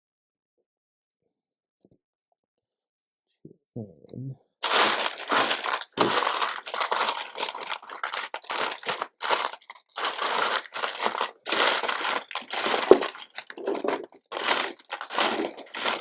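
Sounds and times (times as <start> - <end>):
plastic bricks clattering: 4.6 - 16.0.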